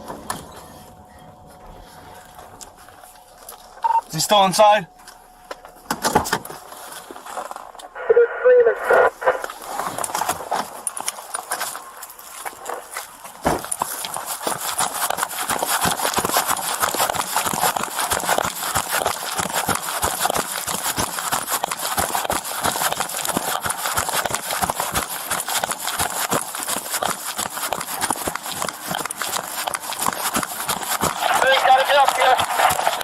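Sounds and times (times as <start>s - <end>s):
running footfalls: 9.5s - 33.0s.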